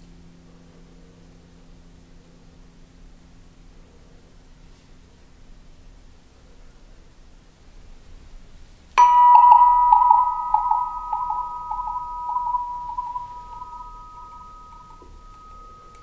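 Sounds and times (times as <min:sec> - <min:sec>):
struck metallic resonator ringing: 0:09.0 - 0:16.0.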